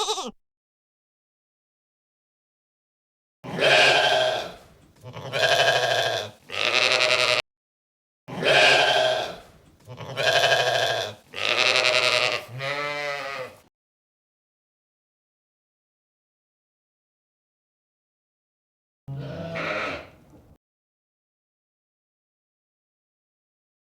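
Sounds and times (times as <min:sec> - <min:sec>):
sheep bleating: 0:00.0 - 0:00.4, 0:03.4 - 0:07.4, 0:08.3 - 0:13.6, 0:19.1 - 0:20.2.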